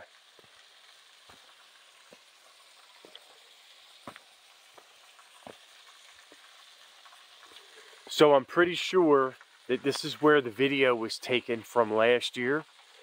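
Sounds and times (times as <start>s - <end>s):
small waterfall hissing: 0.0s - 13.0s
faint footsteps on rock: 1.3s - 1.5s, 4.0s - 5.6s.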